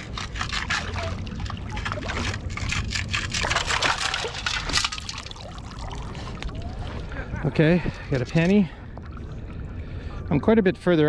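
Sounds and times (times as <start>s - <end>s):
digging gritty ground: 0.0s - 5.5s.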